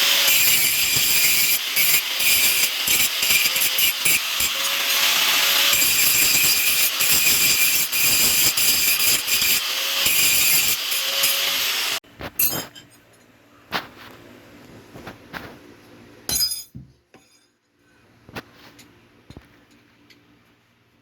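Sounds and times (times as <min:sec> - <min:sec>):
power tool grinding steel: 0:00.0 - 0:12.0.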